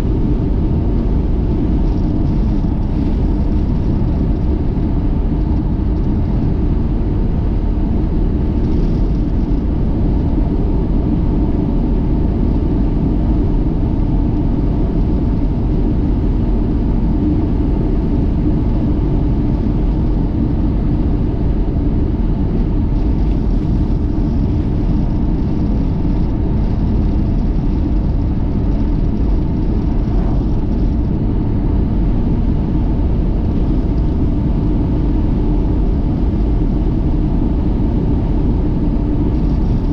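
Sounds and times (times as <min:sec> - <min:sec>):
car engine and road noise: 0:00.0 - 0:39.9.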